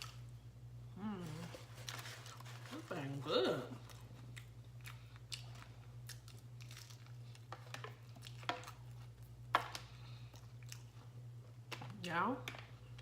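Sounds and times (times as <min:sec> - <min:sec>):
faint low hum: 0:00.0 - 0:13.0
chewing crunchy food: 0:03.8 - 0:11.2.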